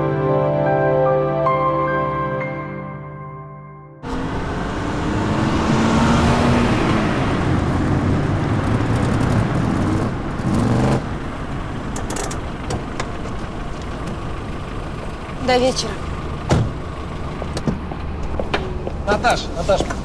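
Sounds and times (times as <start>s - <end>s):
car engine humming: 4.0s - 20.0s
road noise: 4.0s - 20.0s.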